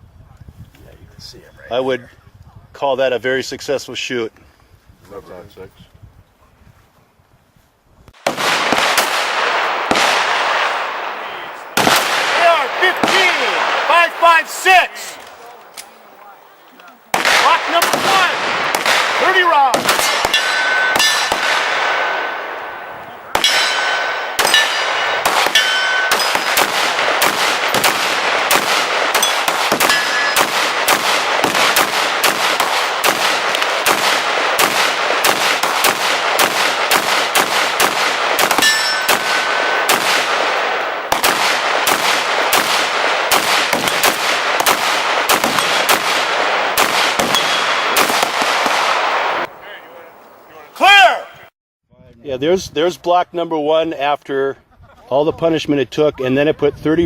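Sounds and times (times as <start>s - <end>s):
rifle firing: 8.2s - 15.4s, 17.1s - 49.5s
metal target ringing clang: 20.0s - 22.5s, 23.4s - 26.8s, 28.4s - 30.5s, 38.6s - 39.9s.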